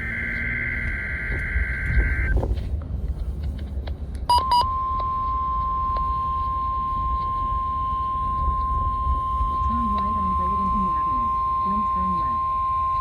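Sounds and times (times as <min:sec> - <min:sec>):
buzzing digital data burst: 0:00.0 - 0:02.3
short blips: 0:00.0 - 0:02.4, 0:04.3 - 0:13.0
steady warning alarm tone: 0:00.0 - 0:02.4, 0:04.3 - 0:13.0
car road rumble: 0:00.0 - 0:13.0.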